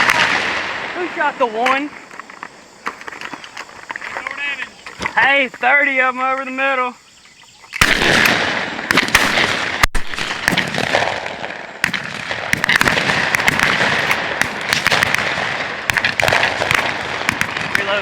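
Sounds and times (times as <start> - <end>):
rapid shotgun fire: 0.0 - 1.3, 7.8 - 18.0.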